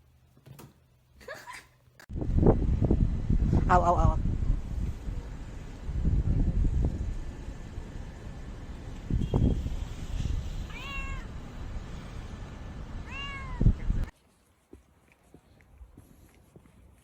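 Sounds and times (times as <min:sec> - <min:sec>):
cat meowing: 0:10.6 - 0:11.4, 0:13.0 - 0:13.8.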